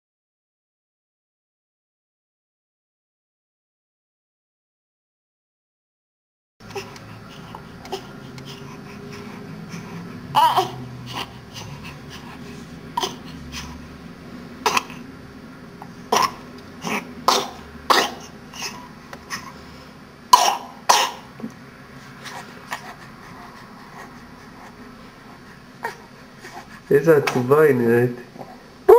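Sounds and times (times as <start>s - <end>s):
harsh coughs and wheezes: 14.6s - 15.0s, 16.1s - 19.4s, 20.3s - 21.3s.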